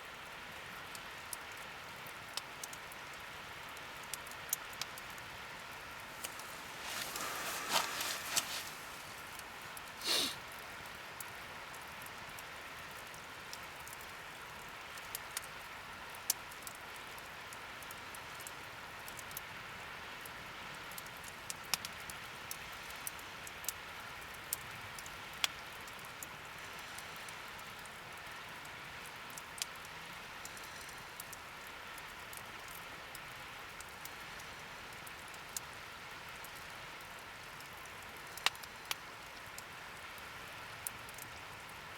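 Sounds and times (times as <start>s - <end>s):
wood fire crackling and popping: 5.9s - 10.4s, 37.7s - 39.7s
rustling: 6.0s - 10.4s.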